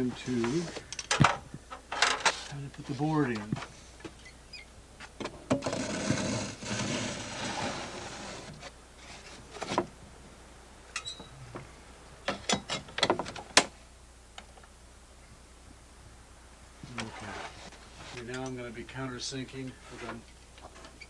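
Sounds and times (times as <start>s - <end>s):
siding plank scraping: 0.0s - 0.9s, 5.5s - 9.9s, 16.9s - 18.3s.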